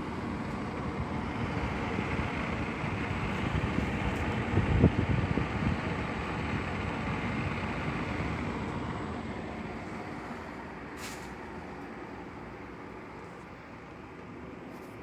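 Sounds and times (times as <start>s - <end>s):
air conditioner fan droning: 0.0s - 15.0s
short hiss: 11.0s - 11.5s.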